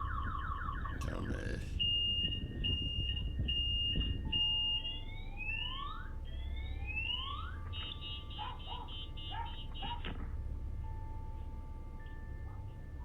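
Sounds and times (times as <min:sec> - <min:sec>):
anti-theft alarm tones: 0:00.0 - 0:10.0.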